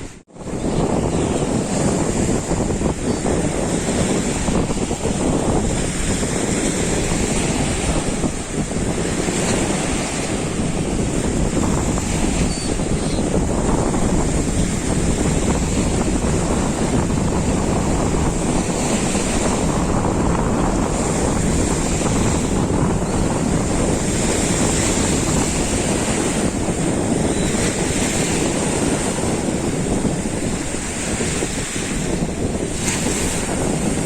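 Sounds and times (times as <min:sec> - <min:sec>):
wind buffeting microphone: 0:00.0 - 0:34.0.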